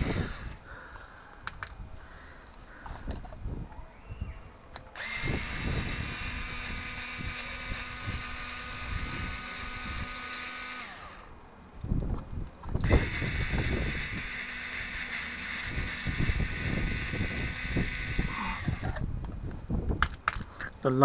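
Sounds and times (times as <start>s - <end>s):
electric screwdriver whining: 0.0s - 0.6s, 4.7s - 20.5s.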